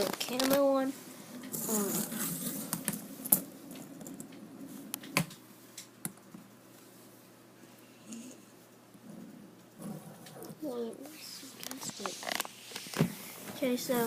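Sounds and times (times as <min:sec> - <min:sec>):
child's voice: 0:00.0 - 0:01.0, 0:10.5 - 0:12.4, 0:13.5 - 0:14.0.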